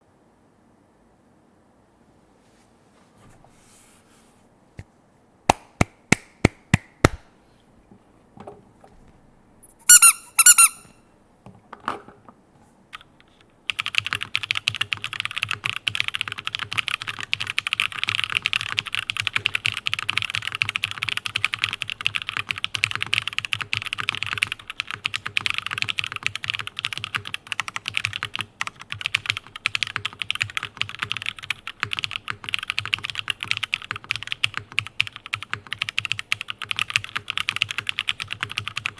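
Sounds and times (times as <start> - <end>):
short high squeak: 9.8 - 11.0
mechanical keyboard typing: 12.9 - 38.9.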